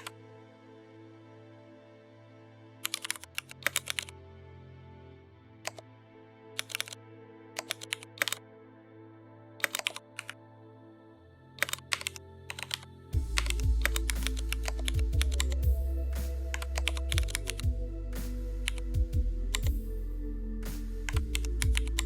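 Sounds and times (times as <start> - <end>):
computer keyboard typing: 6.6 - 7.0, 7.6 - 8.4, 9.6 - 10.3, 11.6 - 15.5, 16.5 - 17.6
background music with heavy bass: 11.8 - 22.0.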